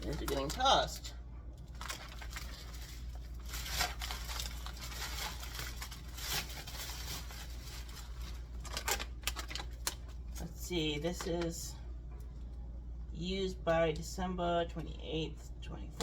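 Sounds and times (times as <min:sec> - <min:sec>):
plastic packaging crinkling: 0:00.0 - 0:10.5
steady low hum: 0:00.0 - 0:16.0.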